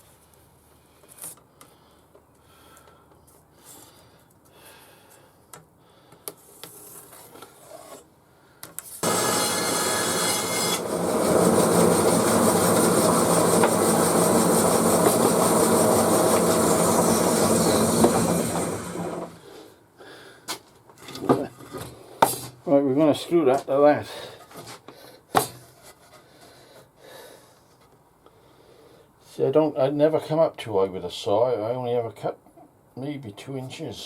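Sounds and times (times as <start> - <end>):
power saw cutting wood: 9.0 - 19.5.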